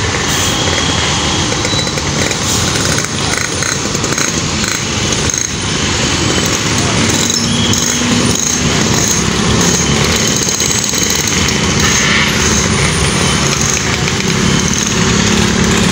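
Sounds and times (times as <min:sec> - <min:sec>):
vehicle engines running: 0:00.0 - 0:15.9.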